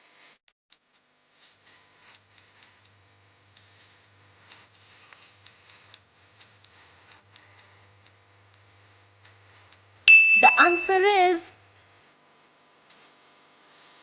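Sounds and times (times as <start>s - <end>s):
low steady hum: 10.0s - 11.2s.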